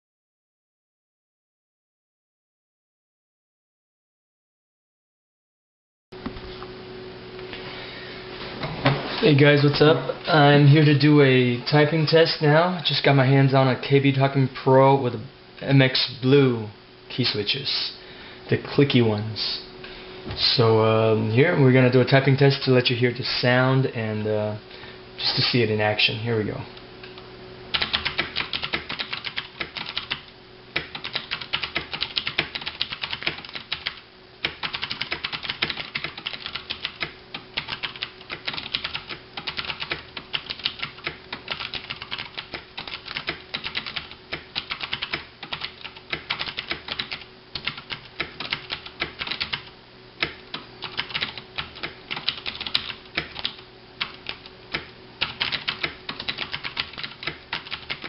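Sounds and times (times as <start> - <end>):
fast typing on mechanical keyboard: 27.7 - 30.2, 30.8 - 58.0.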